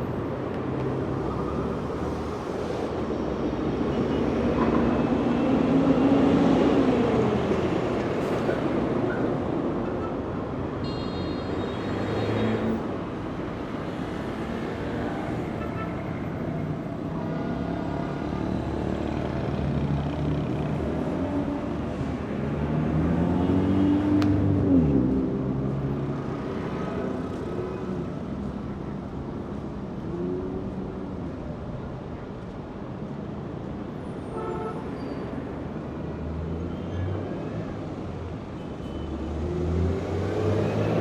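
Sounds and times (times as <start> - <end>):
city traffic rumble: 0.0 - 41.0.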